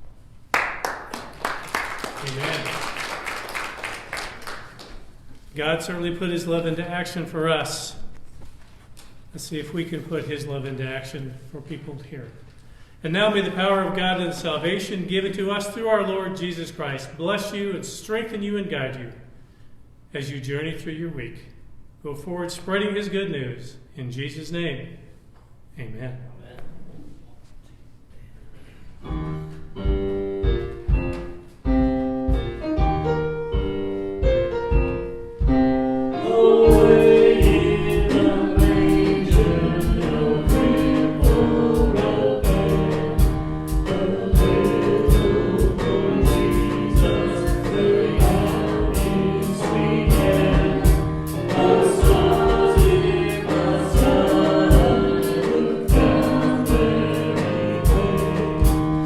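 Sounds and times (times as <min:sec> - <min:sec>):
band with steady drums: 0:29.8 - 0:59.0
choir singing worship song: 0:34.8 - 0:59.0.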